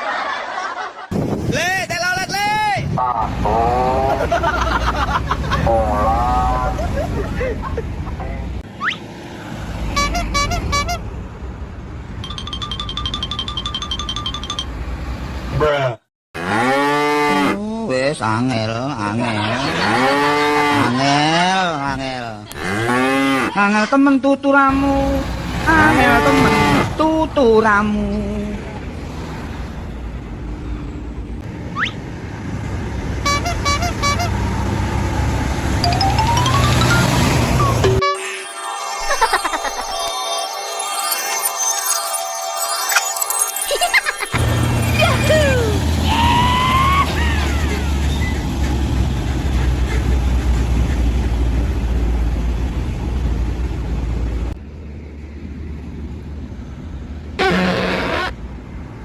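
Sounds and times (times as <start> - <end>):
truck engine rumbling: 2.8 - 15.6, 24.7 - 38.0, 42.6 - 59.0
multi-tone bus horn toots: 9.8 - 11.2, 16.4 - 17.6, 24.8 - 27.0, 33.2 - 35.1, 57.4 - 58.4
low engine rumble: 44.4 - 57.4.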